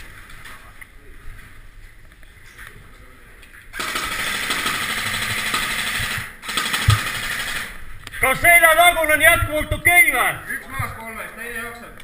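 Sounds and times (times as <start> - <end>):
airsoft gun firing full-auto: 3.8 - 7.8.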